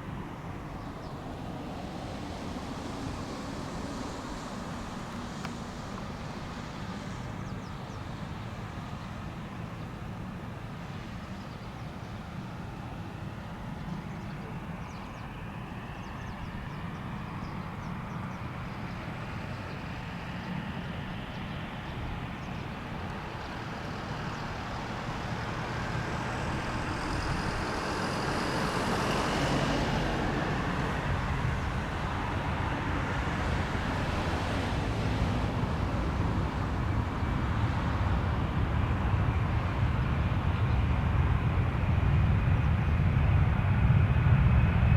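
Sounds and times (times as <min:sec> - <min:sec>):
jet engines spooling up: 0:18.7 - 0:44.9.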